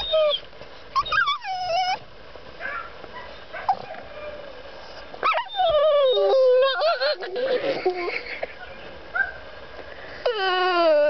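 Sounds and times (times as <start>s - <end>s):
dog whining: 0.0s - 4.6s, 5.2s - 8.2s, 10.2s - 11.0s.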